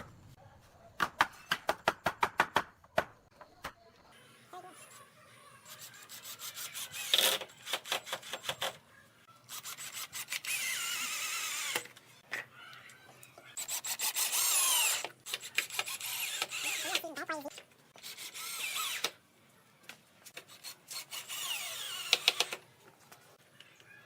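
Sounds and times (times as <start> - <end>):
power drill whining in wood: 9.6 - 11.9, 13.6 - 17.0, 18.1 - 19.2, 20.9 - 22.6.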